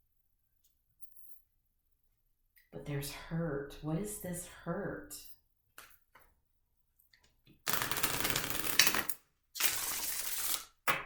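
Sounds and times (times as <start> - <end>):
cards being shuffled: 7.7 - 10.8.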